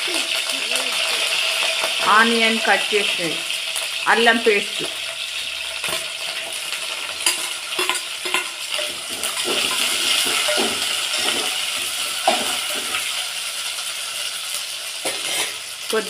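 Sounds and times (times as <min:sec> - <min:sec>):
onion sizzling in a pan: 0:00.0 - 0:16.0
spoon knocking against pan: 0:07.2 - 0:13.0.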